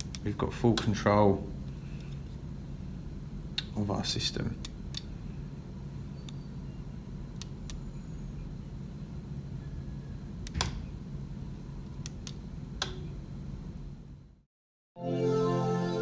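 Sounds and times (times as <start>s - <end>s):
low room hum: 0.0s - 14.5s.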